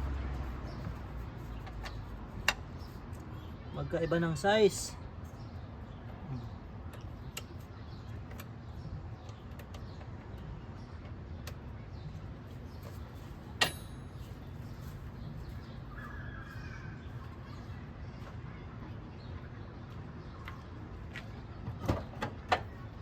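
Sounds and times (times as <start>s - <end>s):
metallic clink with ring: 13.6s - 14.4s
bird calling: 15.8s - 17.3s.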